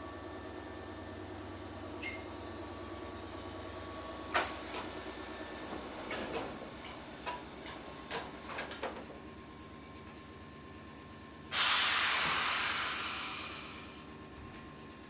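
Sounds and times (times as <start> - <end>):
train equipment hum: 0.0 - 15.0
sliding doors clunking: 4.4 - 9.4
air hiss: 11.5 - 14.1.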